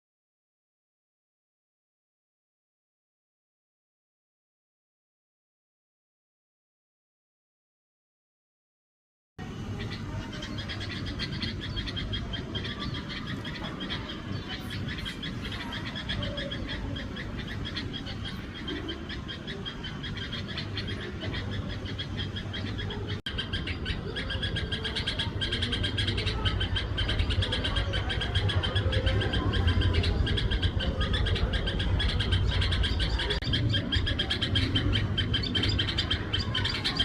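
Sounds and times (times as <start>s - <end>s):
small birds chirping: 9.4s - 37.0s.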